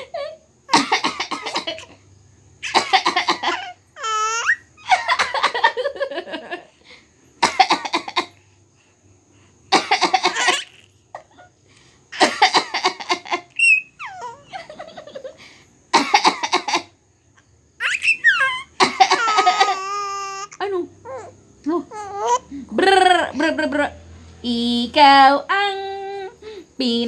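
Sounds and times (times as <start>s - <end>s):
adult coughing: 0.7s - 1.9s, 2.7s - 3.6s, 7.4s - 8.4s, 9.7s - 10.6s, 12.2s - 12.9s, 16.0s - 16.7s, 18.8s - 19.3s
baby laughing and squealing: 2.6s - 5.5s, 13.5s - 15.3s, 17.8s - 21.3s, 21.9s - 22.5s.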